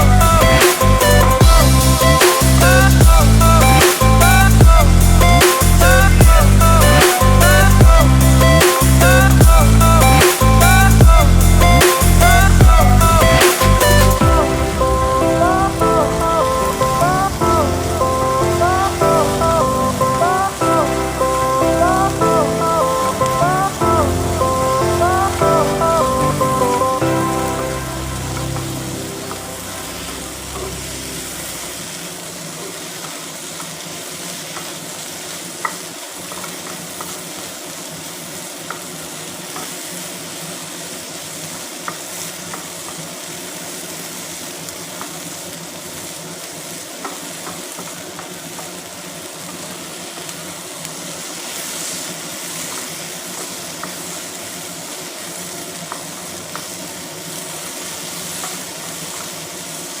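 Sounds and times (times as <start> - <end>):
food sizzling in a pan: 13.5 - 60.0.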